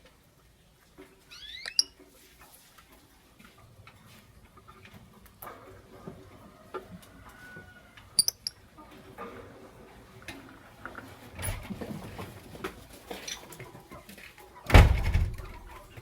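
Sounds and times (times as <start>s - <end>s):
birds scratching and rustling: 0.8s - 16.0s
sharp high bird chirps: 1.3s - 2.0s, 8.2s - 8.6s.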